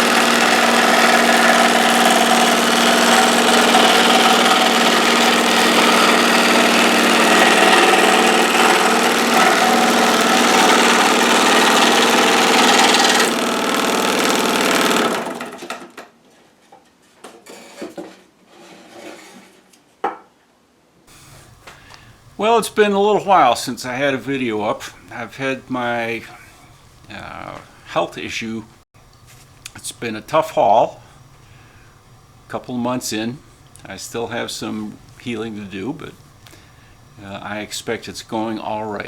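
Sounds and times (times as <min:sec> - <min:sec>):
scroll saw motor running: 0:00.0 - 0:15.8.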